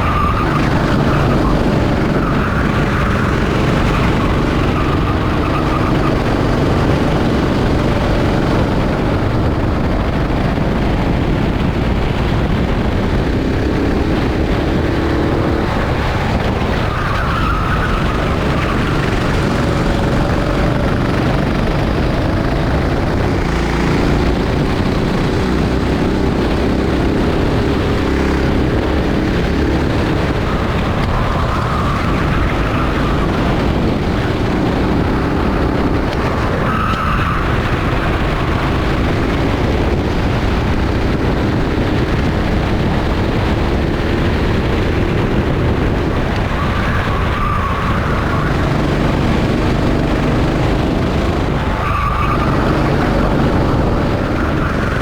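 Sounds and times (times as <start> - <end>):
kart engine revving: 0.0 - 55.0
tyres squealing: 46.4 - 55.0.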